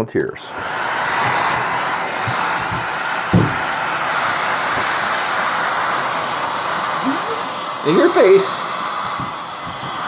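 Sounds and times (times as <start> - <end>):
hair dryer blowing: 0.5 - 10.0
low thumps: 3.3 - 3.7.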